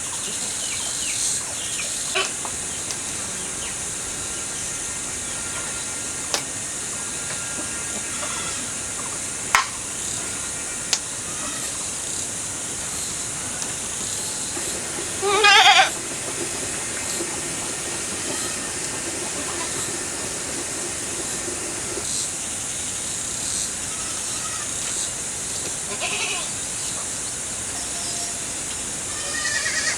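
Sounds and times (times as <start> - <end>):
steady high hiss: 0.0 - 29.9
goat bleating: 11.2 - 11.9, 15.0 - 16.0, 18.2 - 19.8, 25.9 - 26.5, 29.1 - 29.9.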